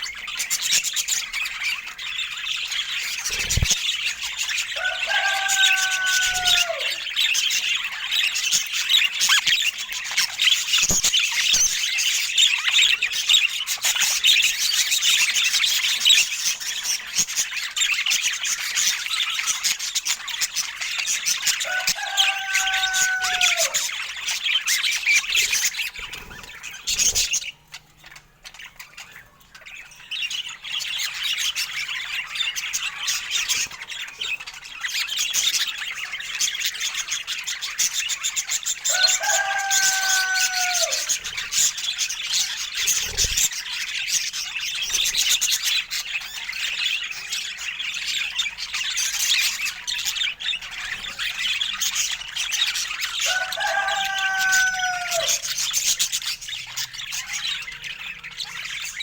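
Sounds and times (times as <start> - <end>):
budgerigars chattering: 0.0 - 59.0
falling bird call: 4.8 - 7.1, 21.6 - 23.9, 38.9 - 41.4, 53.2 - 55.5.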